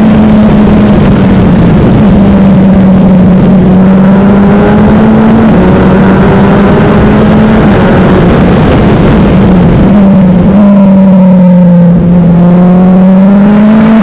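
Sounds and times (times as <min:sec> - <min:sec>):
race car engine at high revs: 0:00.0 - 0:14.0
wind noise: 0:00.0 - 0:14.0.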